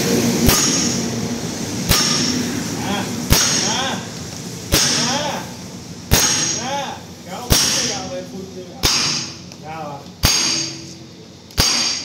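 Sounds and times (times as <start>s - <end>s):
hammer striking steel: 0.4s - 1.1s, 1.9s - 2.5s, 3.3s - 3.9s, 4.7s - 5.4s, 6.1s - 6.8s, 7.5s - 8.0s, 8.8s - 9.5s, 10.2s - 12.0s.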